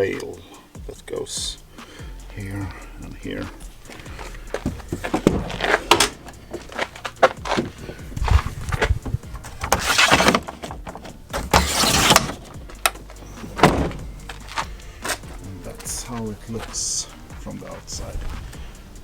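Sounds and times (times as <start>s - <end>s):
handling clicks and knocks: 3.4s - 15.9s.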